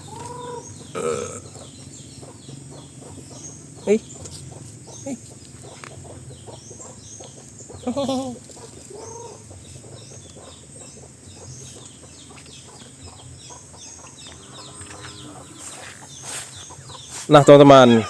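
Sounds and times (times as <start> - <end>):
chickens clucking: 0.0 - 18.0
small birds chirping: 0.0 - 18.0.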